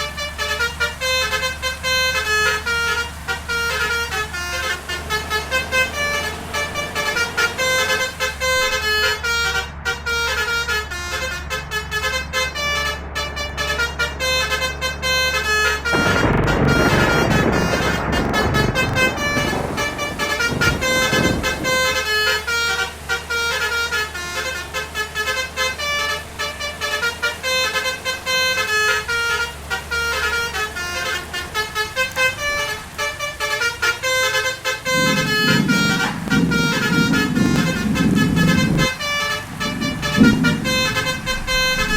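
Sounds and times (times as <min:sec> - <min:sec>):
bus musical horn melody: 0:00.0 - 0:41.9
engine running: 0:00.0 - 0:41.9
loud rushing noise: 0:15.9 - 0:23.5, 0:34.5 - 0:41.9.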